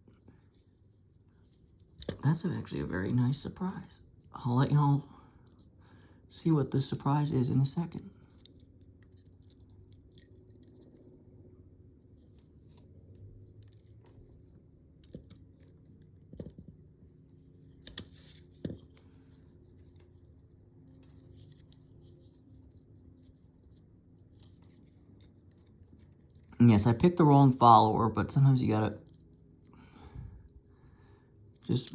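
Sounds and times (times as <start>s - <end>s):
metallic clicks of padlock parts: 8.3s - 11.1s, 31.5s - 31.9s.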